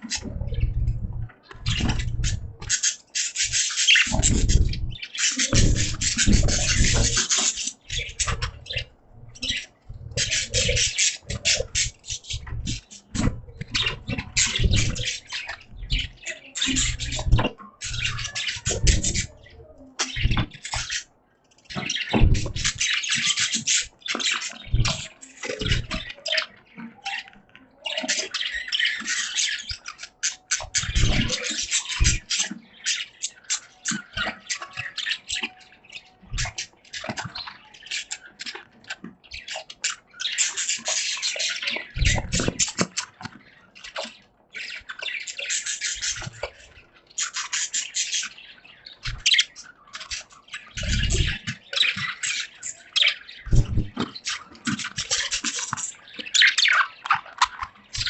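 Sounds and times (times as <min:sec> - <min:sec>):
budgies chirping and warbling: 0:00.0 - 0:58.0
low thumps: 0:22.1 - 0:22.7.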